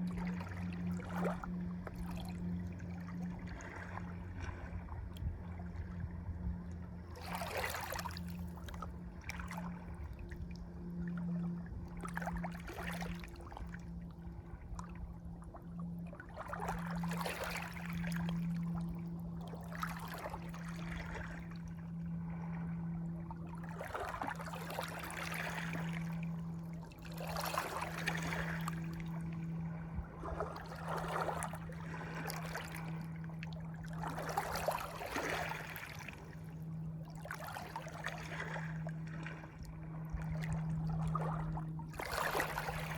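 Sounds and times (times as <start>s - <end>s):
steady low hum: 0.0s - 42.9s
water splashing and gurgling: 0.0s - 42.9s.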